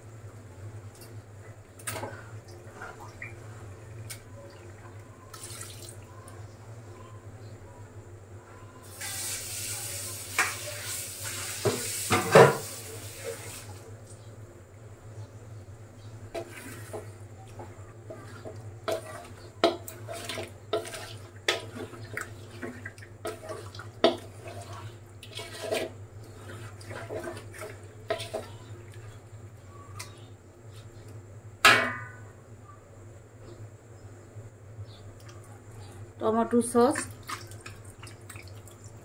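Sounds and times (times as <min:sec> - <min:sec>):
metal spoon scraping cooking pot: 0:18.1 - 0:28.5.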